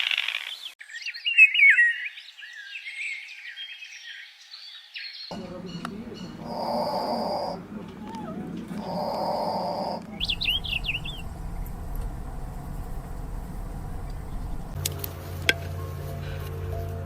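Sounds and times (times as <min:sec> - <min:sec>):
harsh raspy bird calls: 0:05.3 - 0:14.8
high rapidly sweeping chirps: 0:08.8 - 0:14.8.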